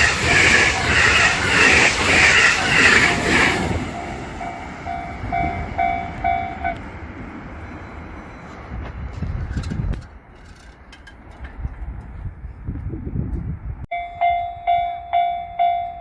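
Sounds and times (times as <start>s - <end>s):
train wheels on rails: 0.0s - 13.5s
level crossing warning bell: 3.9s - 6.8s, 13.9s - 16.0s.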